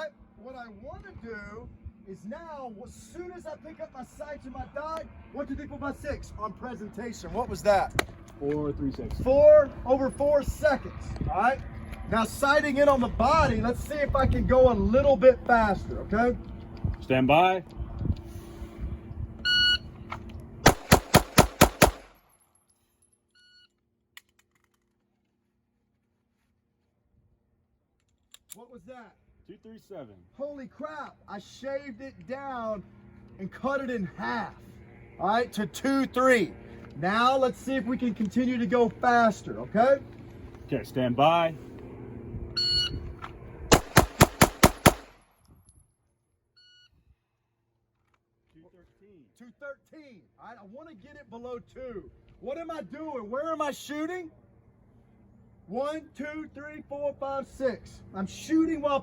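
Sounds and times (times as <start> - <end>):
faint short beep: 19.4 - 19.9, 42.6 - 43.0, 46.6 - 47.0
rapid pistol shots: 20.6 - 22.2, 43.7 - 45.2.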